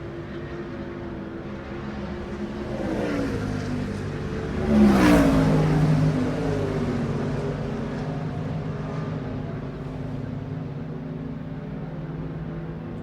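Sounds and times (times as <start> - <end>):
race car passing by: 1.5 - 10.4.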